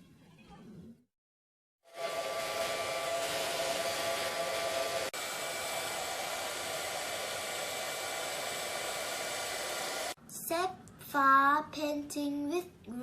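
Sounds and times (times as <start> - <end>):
hair dryer blowing: 1.9 - 10.2.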